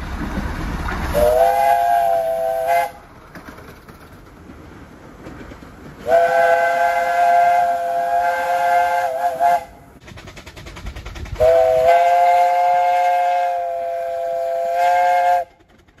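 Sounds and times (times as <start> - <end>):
steam locomotive chime whistle: 1.1 - 3.0, 6.0 - 9.8, 11.4 - 15.6
rapid ticking: 10.0 - 11.4.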